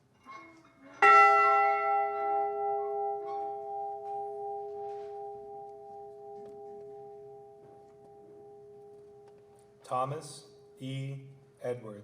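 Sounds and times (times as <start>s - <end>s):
ship's bell ringing: 1.0s - 9.4s.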